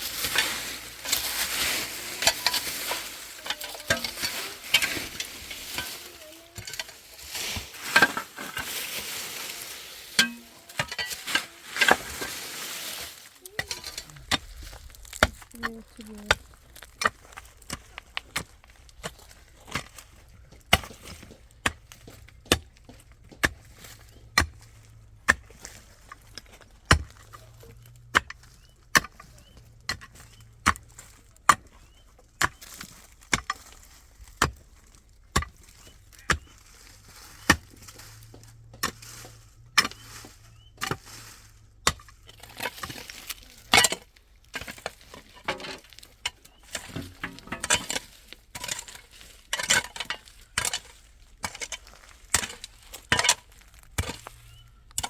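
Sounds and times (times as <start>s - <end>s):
hand tool striking: 0.1s - 14.4s.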